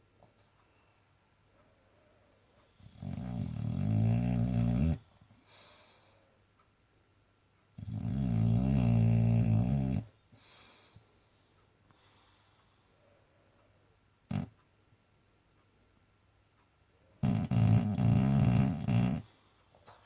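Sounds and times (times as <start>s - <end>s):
dog breathing softly: 1.6s - 6.4s, 7.8s - 14.5s
dog snoring: 2.6s - 5.1s, 7.8s - 10.1s, 14.3s - 14.6s, 17.2s - 19.5s.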